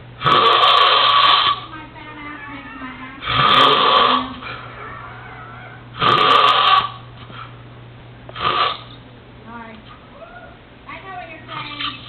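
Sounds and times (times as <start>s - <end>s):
faint low hum: 1.5s - 6.1s
person snoring: 3.2s - 4.5s.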